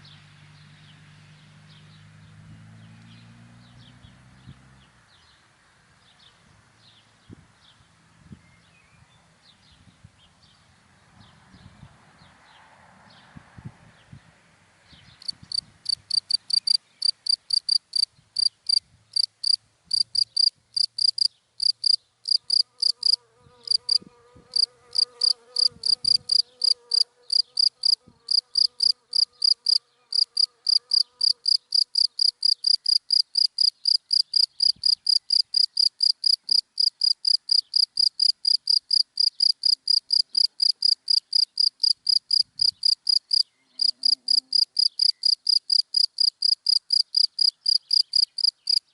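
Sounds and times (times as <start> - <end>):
cricket chirping: 15.2 - 24.0, 24.6 - 48.9.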